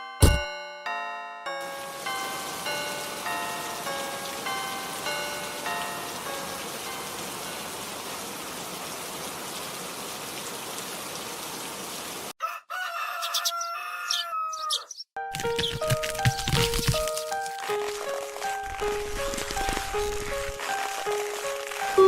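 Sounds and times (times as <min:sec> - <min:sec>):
chime-like notes: 0:00.0 - 0:07.3
melody: 0:00.0 - 0:07.7, 0:15.2 - 0:22.0
steady rain-like hiss: 0:01.6 - 0:12.4, 0:17.6 - 0:22.0
rooster crowing: 0:12.4 - 0:14.9.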